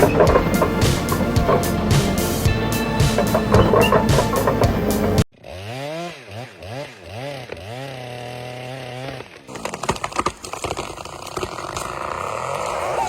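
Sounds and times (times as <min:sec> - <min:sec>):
sharp knocks and clatter: 0:00.0 - 0:05.2
chainsaw engine revving: 0:00.0 - 0:13.0.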